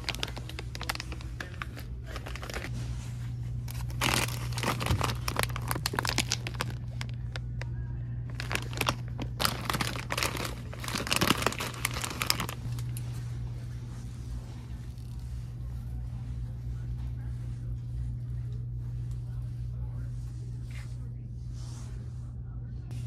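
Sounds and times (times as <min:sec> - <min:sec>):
plastic packaging crinkling: 0:00.0 - 0:02.7, 0:03.6 - 0:13.0
steady low hum: 0:00.0 - 0:23.0.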